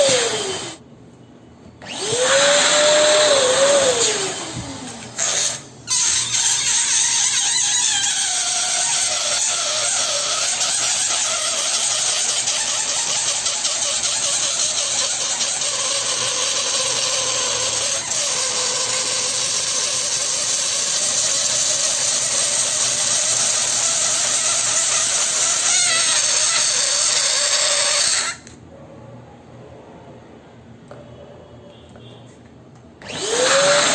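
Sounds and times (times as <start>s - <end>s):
balloon pump motor hum: 1.8s - 28.5s.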